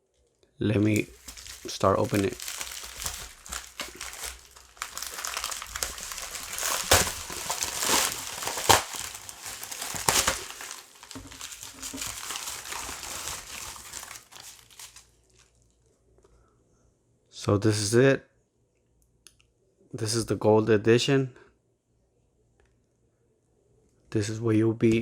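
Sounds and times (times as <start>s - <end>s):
sharp snaps of wrapping: 0.8s - 15.6s
package wrapping crinkling: 0.8s - 15.7s.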